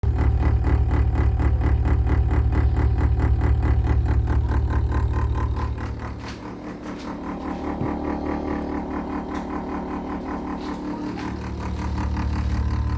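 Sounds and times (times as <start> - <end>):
appliance pulsing low hum: 0.0 - 12.9.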